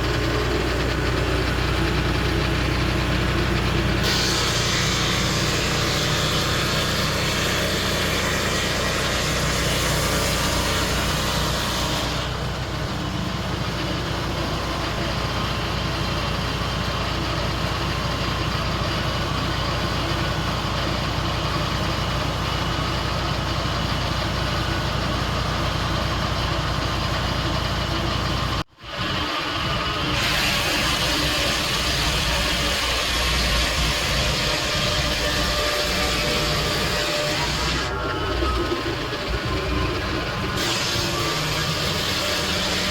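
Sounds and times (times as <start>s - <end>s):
sawmill engine running: 0.0s - 42.9s
loud high hiss: 4.0s - 12.5s, 29.0s - 42.9s.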